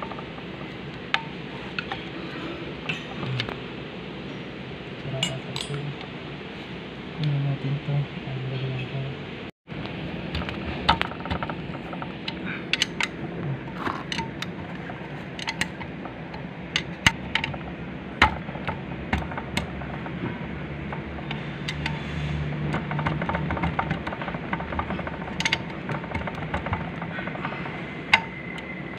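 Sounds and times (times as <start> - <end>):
steady low hum: 0.0 - 28.9
tools and metal parts clicking: 10.4 - 20.2, 20.8 - 28.9.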